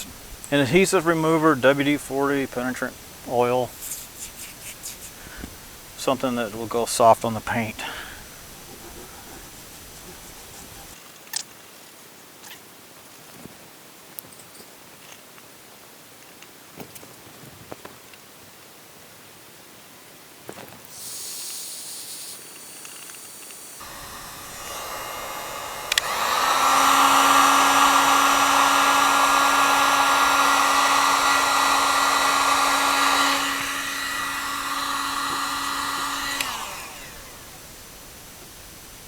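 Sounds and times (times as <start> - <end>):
heat gun fan whine: 0.0 - 11.0, 20.9 - 39.0
high hiss: 0.0 - 11.0, 20.9 - 39.0
heat gun switch click: 23.8 - 37.4.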